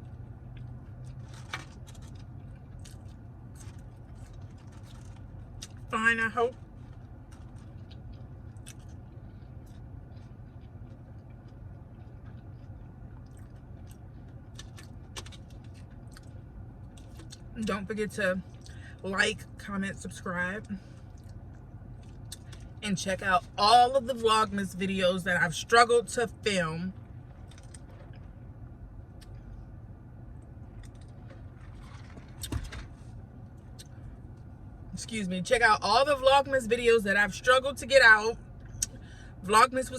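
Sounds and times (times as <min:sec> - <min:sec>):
person chewing food: 0:00.0 - 0:05.9, 0:06.7 - 0:17.5, 0:20.9 - 0:22.8
low hum: 0:00.0 - 0:39.9.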